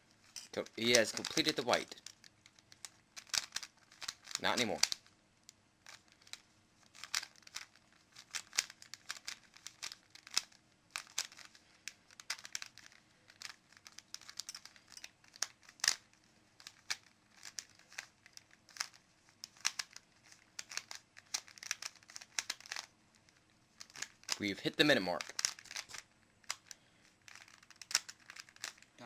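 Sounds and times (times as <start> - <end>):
puzzle cube plastic clicking: 0.5 - 28.9.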